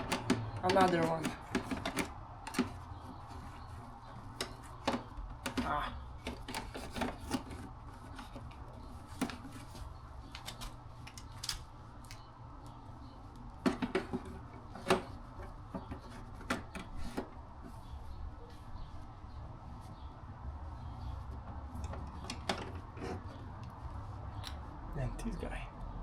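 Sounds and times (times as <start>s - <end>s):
hand tools clicking and knocking: 0.0s - 9.7s.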